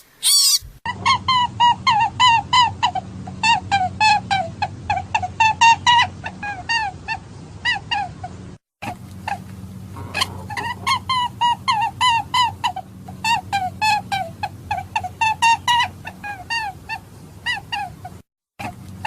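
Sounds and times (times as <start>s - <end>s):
rabbit squeaky calls: 0.0s - 8.4s, 9.2s - 18.8s
steady low hum: 8.3s - 19.0s.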